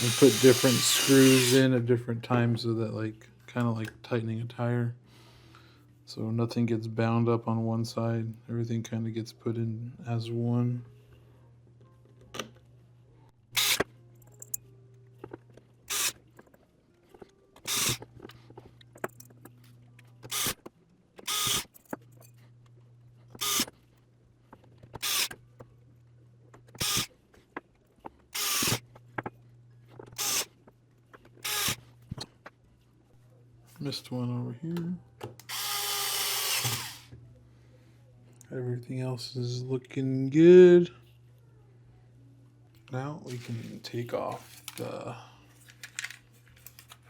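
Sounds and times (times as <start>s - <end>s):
electric screwdriver driving screws: 0.0s - 1.6s, 13.6s - 13.9s, 15.9s - 16.2s, 17.6s - 18.0s, 20.3s - 20.6s, 21.3s - 21.7s, 23.4s - 23.7s, 25.0s - 25.3s, 26.8s - 27.1s, 28.4s - 28.8s, 30.2s - 30.5s, 31.4s - 31.8s, 35.4s - 37.1s.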